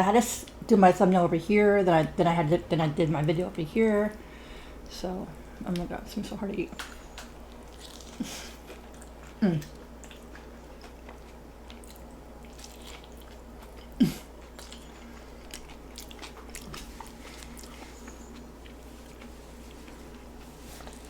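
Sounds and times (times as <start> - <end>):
chewing and crunching: 6.7 - 21.0.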